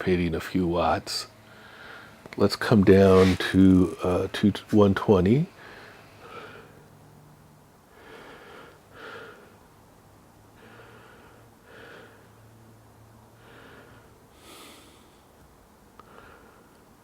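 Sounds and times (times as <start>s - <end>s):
faint low hum: 0.0s - 17.0s
person breathing: 1.4s - 2.2s, 5.6s - 6.9s, 7.9s - 9.6s, 10.6s - 12.5s, 13.3s - 15.4s, 16.0s - 16.9s.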